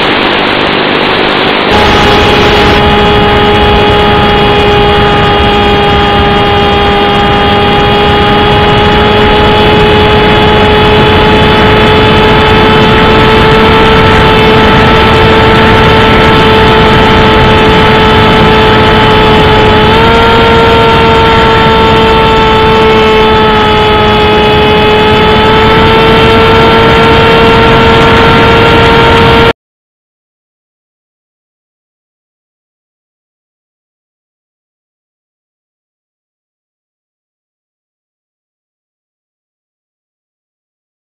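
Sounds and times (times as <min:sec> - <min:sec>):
electric motor whine: 0:00.0 - 0:29.5
propeller rushing noise: 0:00.0 - 0:29.5.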